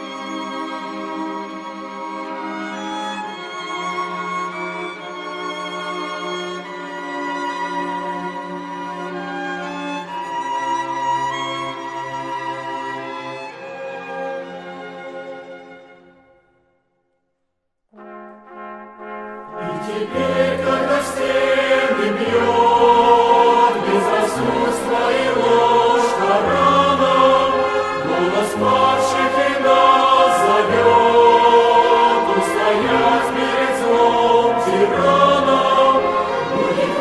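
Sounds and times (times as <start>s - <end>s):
choir singing a hymn: 19.6s - 37.0s.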